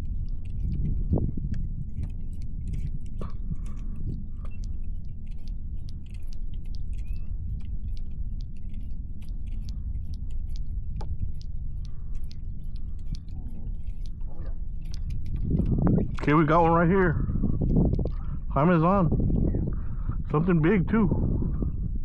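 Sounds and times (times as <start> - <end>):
light clicks and ticks: 0.0 - 16.7
wind buffeting microphone: 0.0 - 22.0.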